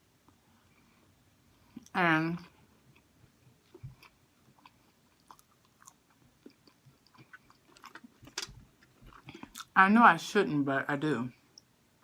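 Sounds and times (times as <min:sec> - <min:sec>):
faint chewing: 0:02.8 - 0:09.8.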